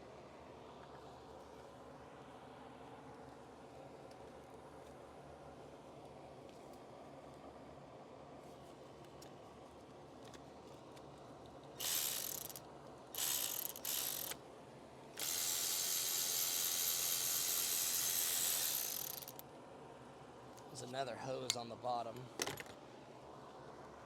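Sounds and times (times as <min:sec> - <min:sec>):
ratchet wrench clicking fast: 0:11.8 - 0:12.6, 0:13.2 - 0:14.4, 0:15.2 - 0:19.4.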